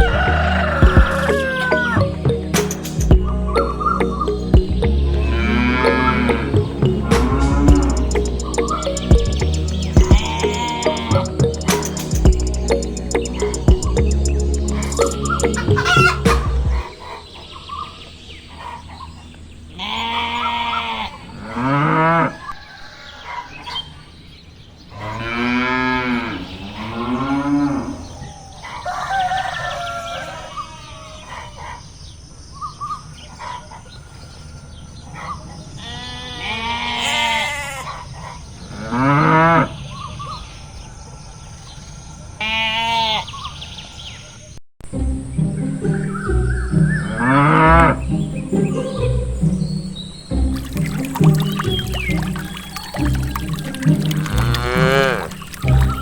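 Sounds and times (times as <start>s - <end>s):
cattle mooing: 5.2s - 6.6s, 54.1s - 55.8s.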